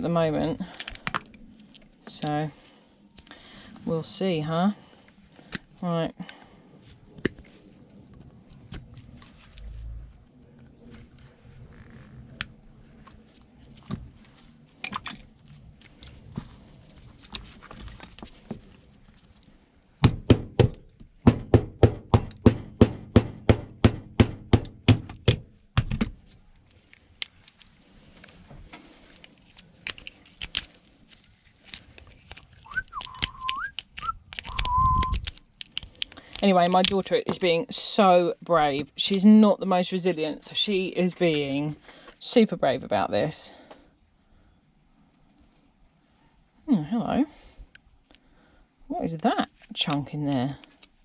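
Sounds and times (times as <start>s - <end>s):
loud rapid knocks: 20.0s - 26.1s
tools and small parts clicking: 31.6s - 37.4s.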